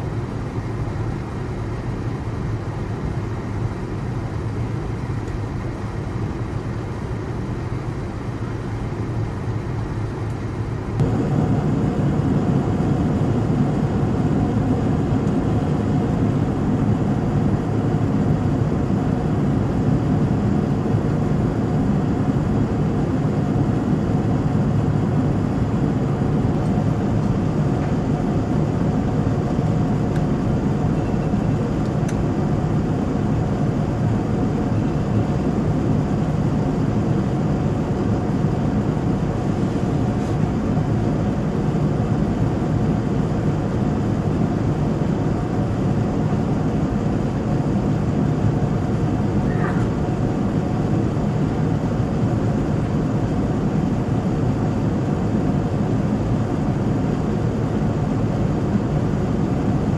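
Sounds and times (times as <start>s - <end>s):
airplane cabin engine hum: 0.0s - 59.9s.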